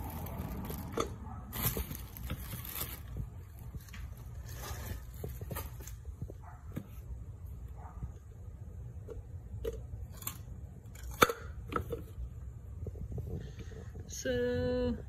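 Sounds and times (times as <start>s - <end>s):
rustling and scraping handling: 0.0s - 8.3s.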